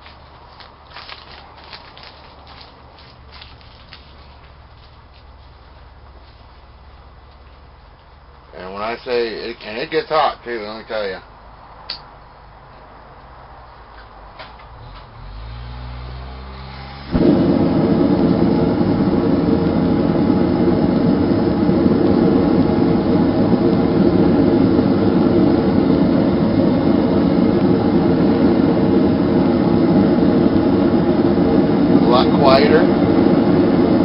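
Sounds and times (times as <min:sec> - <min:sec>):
gas flowing hum: 0:00.0 - 0:14.4, 0:15.9 - 0:34.0
forge burner roaring: 0:14.7 - 0:34.0
burner lighting whoomp: 0:14.8 - 0:34.0.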